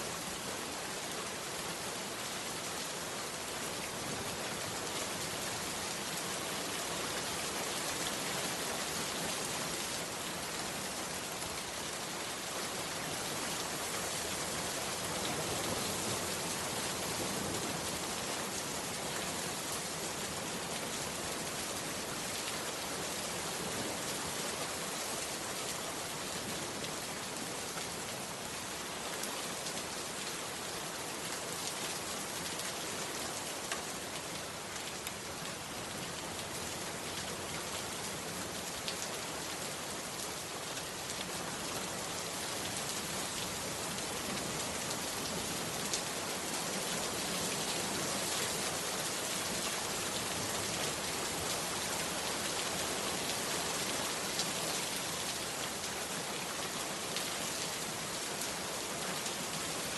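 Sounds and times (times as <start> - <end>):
heavy rain falling: 0.1 - 59.9.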